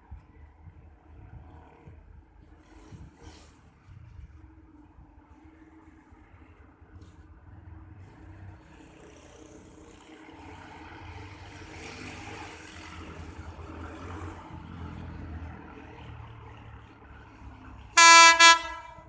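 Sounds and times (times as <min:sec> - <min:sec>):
diesel locomotive engine rumble: 0:12.9 - 0:19.0.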